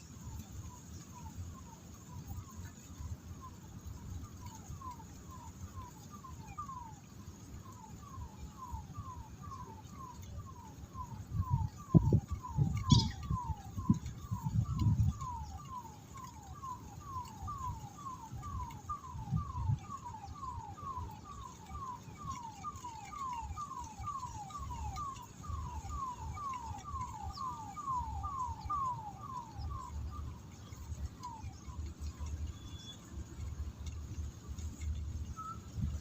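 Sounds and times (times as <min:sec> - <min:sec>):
animal whistled call: 0:07.7 - 0:33.1, 0:35.3 - 0:36.0.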